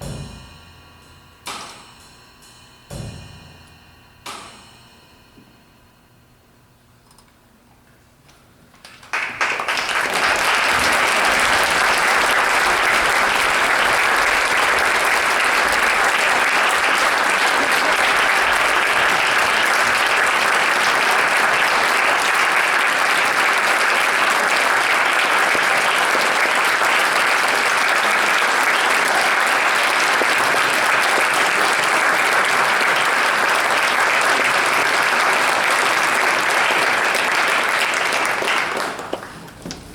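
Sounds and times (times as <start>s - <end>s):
audience applauding: 8.8s - 39.9s.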